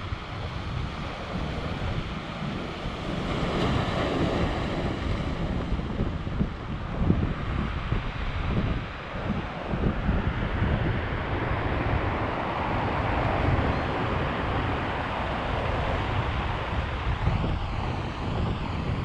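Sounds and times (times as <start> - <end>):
ocean waves roaring: 0.0 - 19.0
wind buffeting the microphone: 0.0 - 19.0.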